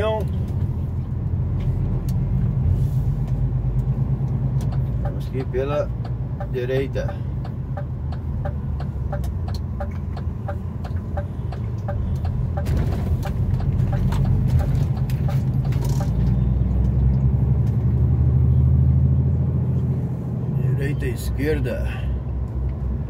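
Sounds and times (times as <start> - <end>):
diesel engine humming: 0.0 - 23.0
turn signal ticking: 3.2 - 17.9.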